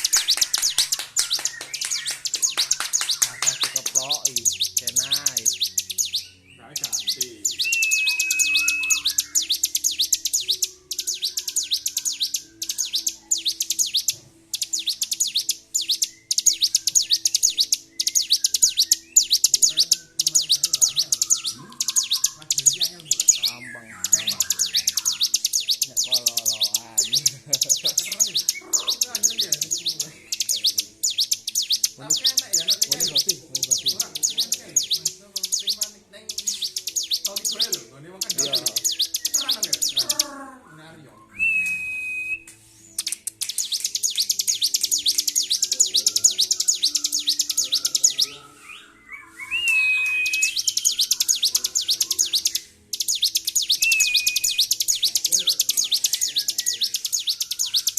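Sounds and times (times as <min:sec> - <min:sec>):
bird chattering song: 0:00.0 - 0:41.8, 0:42.6 - 0:57.9
steady whistle: 0:07.6 - 0:09.4, 0:41.3 - 0:42.5.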